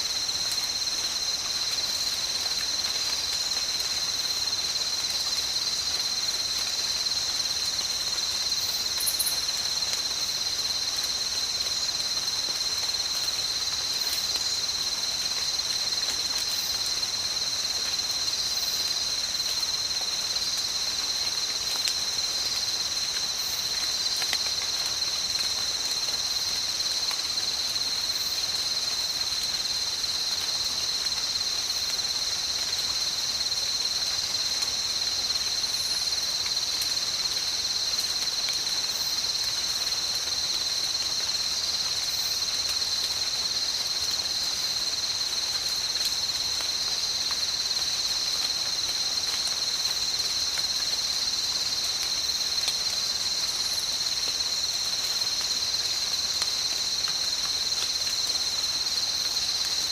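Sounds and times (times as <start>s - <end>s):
soft rain hiss: 0.0s - 59.9s
insects buzzing trill: 8.1s - 10.8s.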